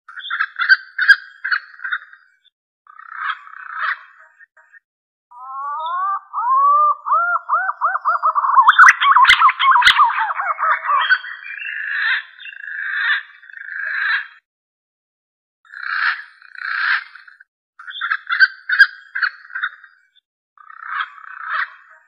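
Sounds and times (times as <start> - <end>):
fluting pigeon whistles: 5.6 - 11.2.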